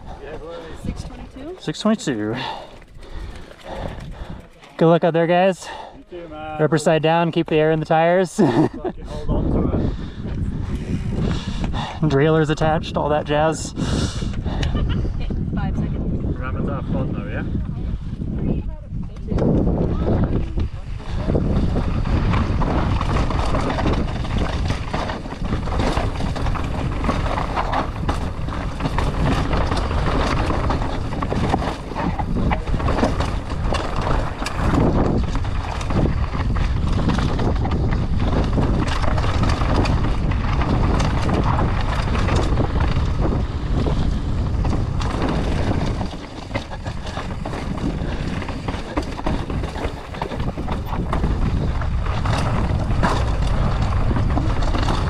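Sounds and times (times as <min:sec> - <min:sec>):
wind rush on microphone: 0:00.0 - 0:04.5, 0:08.4 - 0:55.0
bike knocking and rattling: 0:00.2 - 0:05.9, 0:19.0 - 0:55.0
tyres crunching on dirt: 0:23.0 - 0:37.4, 0:44.6 - 0:55.0.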